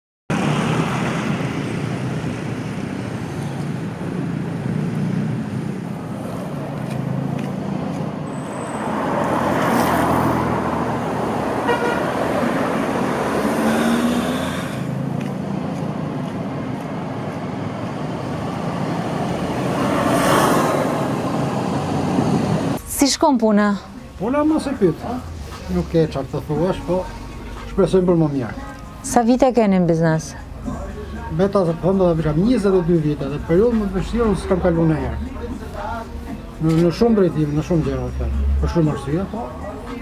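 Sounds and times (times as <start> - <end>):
cars passing by: 0.3 - 40.0
road traffic noise: 0.3 - 40.0
car horn toot: 11.5 - 12.4.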